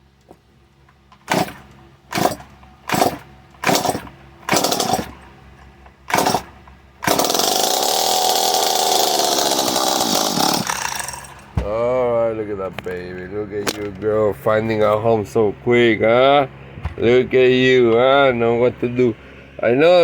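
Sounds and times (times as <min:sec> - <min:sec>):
starter cord pulls: 0:01.1 - 0:05.3, 0:06.1 - 0:11.5
chainsaw engine running: 0:01.2 - 0:12.0.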